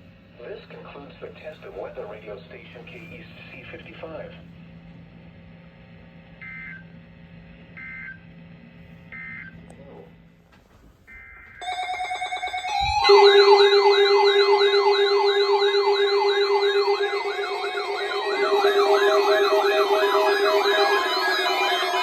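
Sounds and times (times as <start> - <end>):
electronic siren alarm wailing: 11.1 - 22.0
fast pulsing beep: 11.6 - 22.0.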